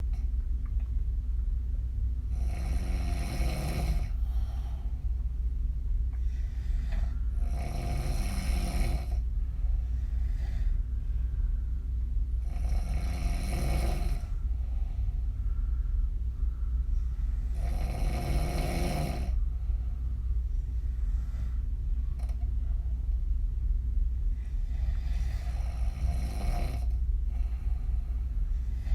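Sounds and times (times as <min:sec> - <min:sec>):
steady low hum: 0:00.0 - 0:28.9
woman snoring: 0:02.3 - 0:04.6, 0:07.3 - 0:09.2, 0:12.4 - 0:14.4, 0:17.4 - 0:19.4, 0:24.6 - 0:27.8
breathing: 0:02.6 - 0:05.3, 0:06.1 - 0:23.0, 0:24.2 - 0:28.9.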